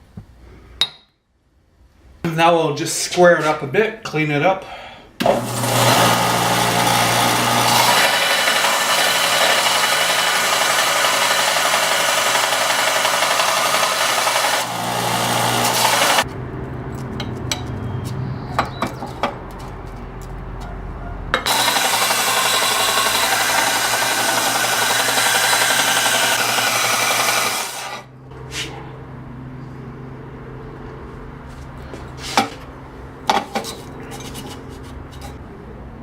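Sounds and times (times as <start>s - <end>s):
power sander grinding wood: 5.2s - 16.3s, 21.4s - 28.1s.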